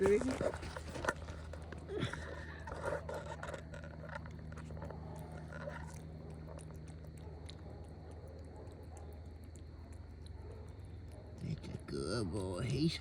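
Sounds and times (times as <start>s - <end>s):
small scraping clicks: 0.0s - 7.7s
cat chewing: 0.0s - 12.9s
steady low hum: 0.0s - 13.0s.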